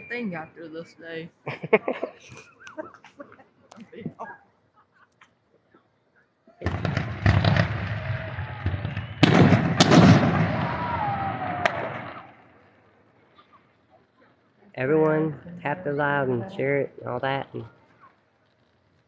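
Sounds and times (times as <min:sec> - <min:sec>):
fireworks bangs and crackle: 0:06.6 - 0:13.4.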